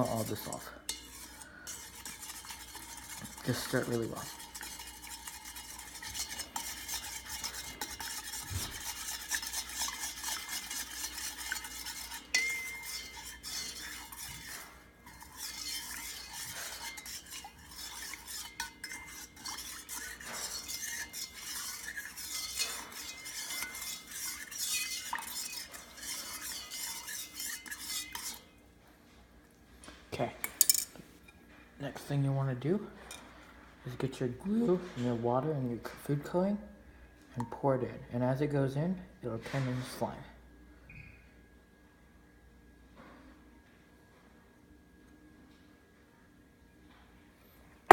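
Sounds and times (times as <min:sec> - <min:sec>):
spoon scraping and clinking bowl: 0:00.0 - 0:28.5.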